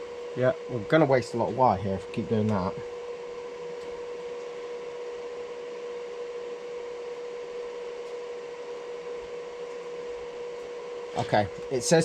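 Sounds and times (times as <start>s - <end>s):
welder wire-feed motor humming: 0.0s - 12.0s.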